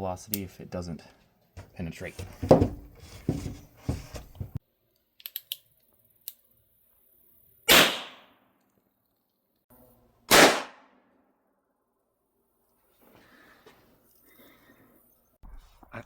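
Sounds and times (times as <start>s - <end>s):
gun handling clicks: 5.0s - 6.4s
gunshots with echo: 10.3s - 10.8s.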